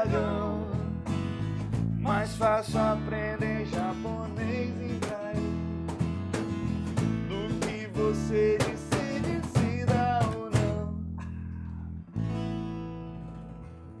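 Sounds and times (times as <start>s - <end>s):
person singing: 0.0s - 1.0s, 2.0s - 5.5s, 7.3s - 11.3s
strummed acoustic guitar: 0.0s - 14.0s.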